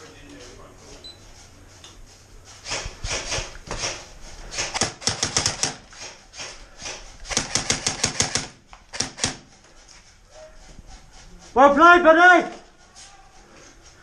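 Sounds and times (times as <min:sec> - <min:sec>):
airsoft rifle firing bursts: 0:02.6 - 0:05.9, 0:07.2 - 0:09.5.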